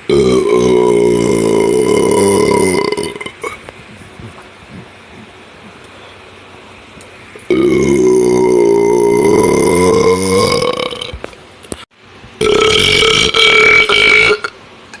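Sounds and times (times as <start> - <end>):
person belching: 0.0 - 3.6, 7.5 - 11.2, 12.4 - 14.6.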